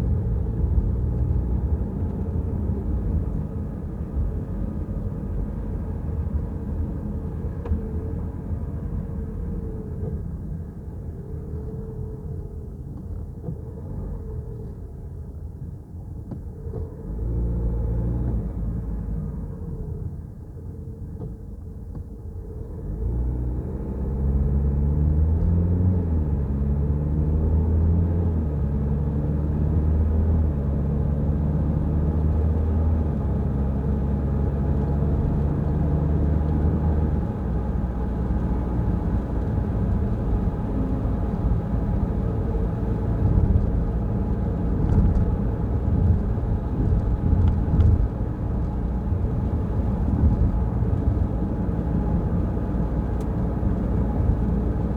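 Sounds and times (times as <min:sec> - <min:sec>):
road noise: 0:16.0 - 0:54.9
car engine accelerating: 0:22.6 - 0:54.9.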